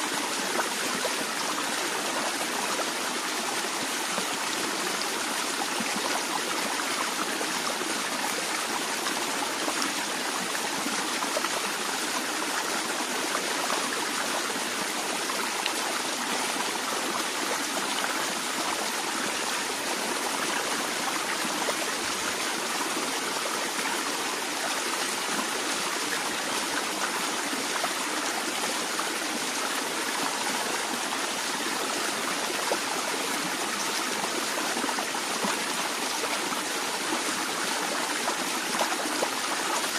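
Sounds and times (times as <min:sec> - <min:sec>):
stream of flowing water: 0:00.0 - 0:39.9.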